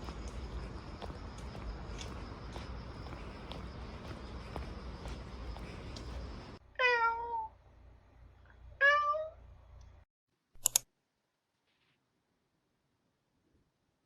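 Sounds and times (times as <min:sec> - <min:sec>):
cat meowing: 0:06.8 - 0:07.5, 0:08.8 - 0:09.4
sharp click: 0:10.6 - 0:10.9.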